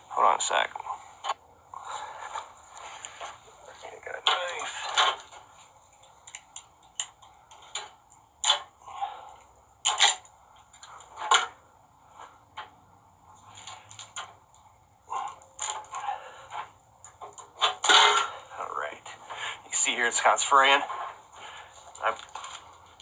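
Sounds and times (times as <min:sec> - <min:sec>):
sharp clicks and cracks: 0:04.2 - 0:08.7.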